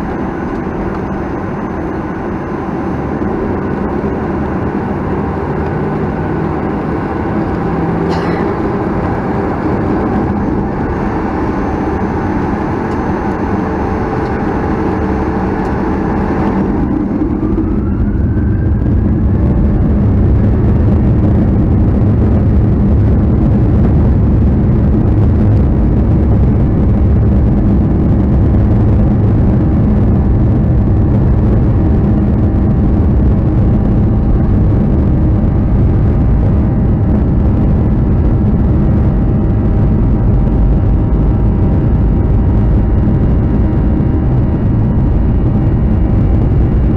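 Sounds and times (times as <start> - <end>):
jet engines spooling up: 0.0 - 46.9.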